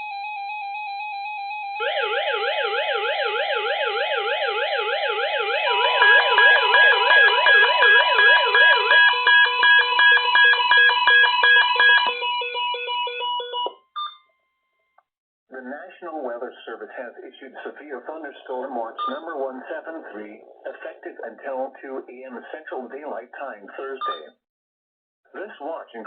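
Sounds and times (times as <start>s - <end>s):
warbling siren-like alarm: 0.0s - 13.8s
loud beeping tone: 5.7s - 12.2s
rapid beeping tone: 5.7s - 12.2s, 18.9s - 19.4s.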